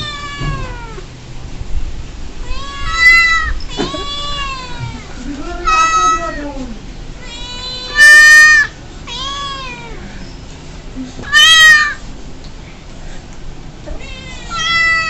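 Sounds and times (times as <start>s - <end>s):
loud cat meow sound effect: 0.0s - 1.0s, 2.5s - 5.0s, 7.3s - 10.0s.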